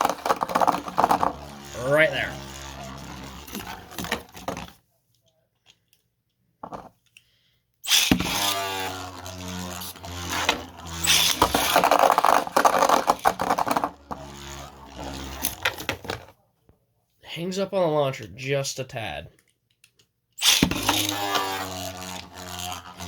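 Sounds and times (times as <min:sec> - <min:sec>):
spinning tops launched from ripcord: 0:00.0 - 0:04.7, 0:07.8 - 0:16.2, 0:20.4 - 0:23.0
spinning tops whirring: 0:00.0 - 0:04.8, 0:07.8 - 0:16.3, 0:20.4 - 0:23.0.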